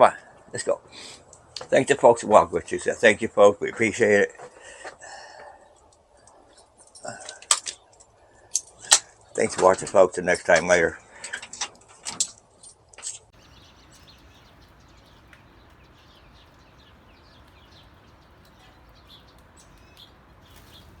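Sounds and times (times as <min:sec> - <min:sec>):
faint bird chirps: 0:13.4 - 0:21.0
rustling: 0:13.4 - 0:21.0
soft steady hiss: 0:13.4 - 0:21.0.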